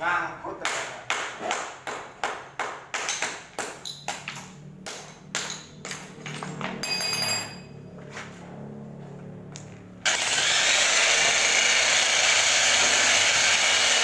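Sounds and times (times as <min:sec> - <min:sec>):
ringing metallic ping: 0:06.8 - 0:07.8.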